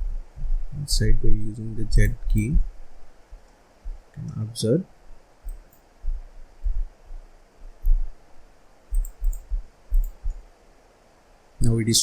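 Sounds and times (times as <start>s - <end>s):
faint clicks: 8.9s - 10.4s.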